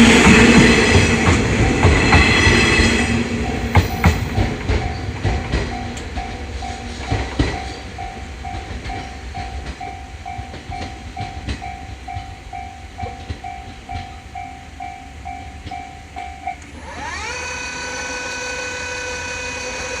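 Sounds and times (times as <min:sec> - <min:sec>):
passing train rumbling and clacking: 0:00.0 - 0:17.6
railroad crossing bell dinging: 0:00.0 - 0:20.0
rising whine: 0:16.6 - 0:20.0.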